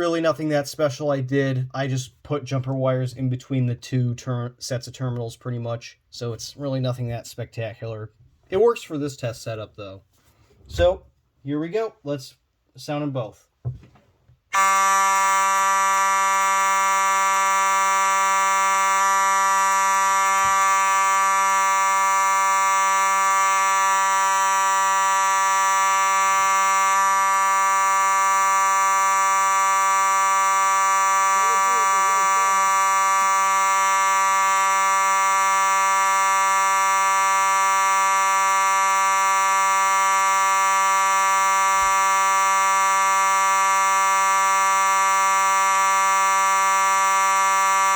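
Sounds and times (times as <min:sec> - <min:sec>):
fire alarm horn: 0:14.5 - 0:47.9.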